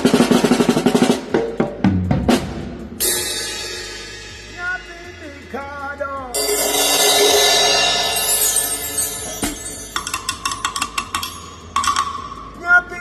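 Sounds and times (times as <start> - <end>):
drum hits: 0.0 - 12.6
cymbal crash: 2.3 - 5.6, 6.3 - 10.6.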